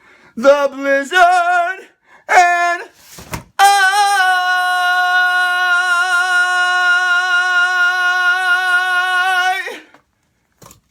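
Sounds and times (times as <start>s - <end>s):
person singing a long note: 3.6s - 9.8s.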